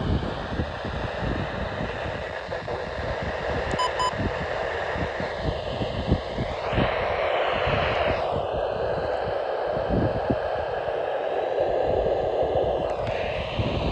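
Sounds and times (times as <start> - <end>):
short electronic beeps: 3.7 - 4.1.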